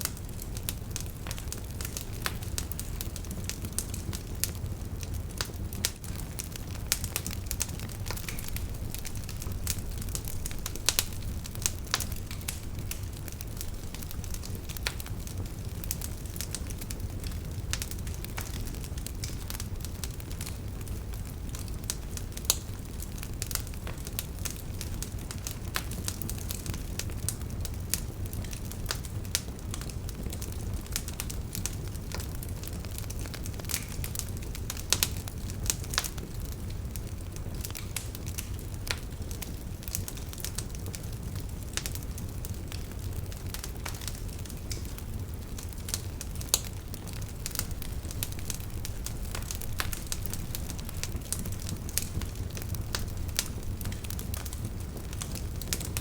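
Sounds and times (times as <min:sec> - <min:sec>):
burning wood crackling and popping: 0:00.0 - 0:56.0
campfire flames rumbling: 0:00.0 - 0:56.0.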